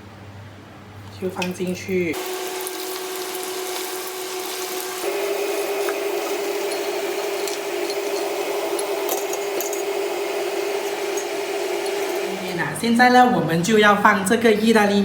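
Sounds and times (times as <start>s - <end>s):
food sizzling in hot oil: 2.1s - 12.8s
steady hum: 2.1s - 13.7s.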